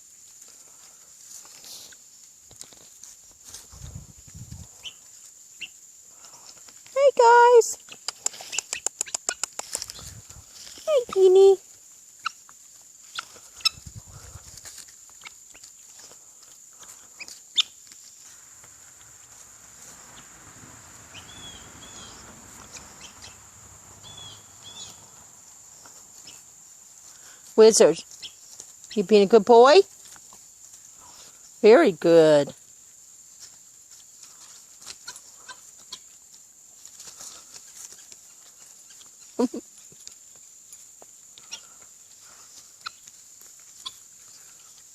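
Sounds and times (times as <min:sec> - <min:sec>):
fowl clucking and peeping: 0:12.2 - 0:12.5, 0:13.1 - 0:16.1, 0:21.0 - 0:25.2, 0:41.4 - 0:44.1
birds chirping: 0:15.2 - 0:29.8, 0:41.3 - 0:43.1.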